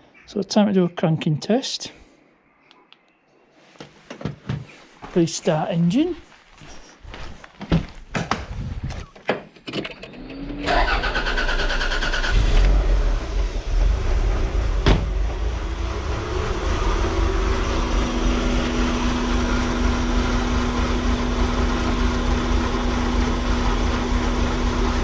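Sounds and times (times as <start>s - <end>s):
engine cranking and starting: 9.6s - 16.2s.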